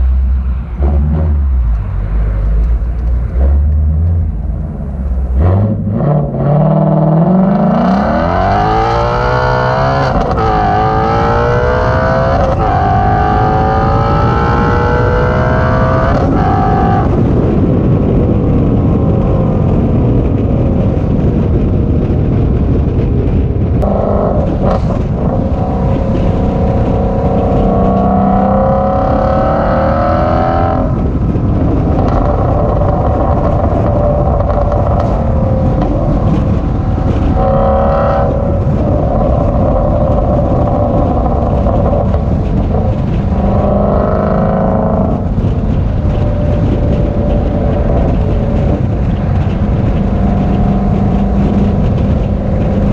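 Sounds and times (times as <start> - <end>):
car engine accelerating hard: 0.0 - 52.9
gear upshifts: 23.8 - 52.9.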